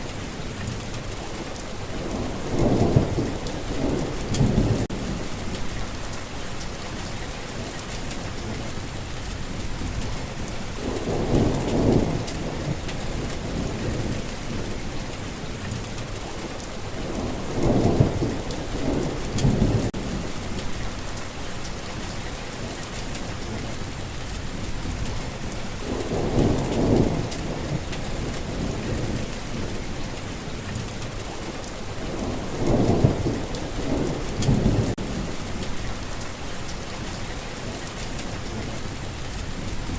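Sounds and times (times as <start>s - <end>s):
steady rain falling: 0.0s - 39.9s
low rolls of thunder: 1.0s - 8.7s, 9.3s - 21.2s, 24.3s - 36.3s.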